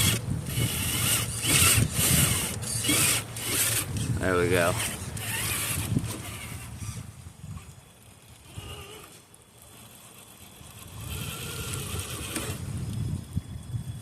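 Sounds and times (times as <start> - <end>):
toy car electric motor whining: 0.0 - 13.4.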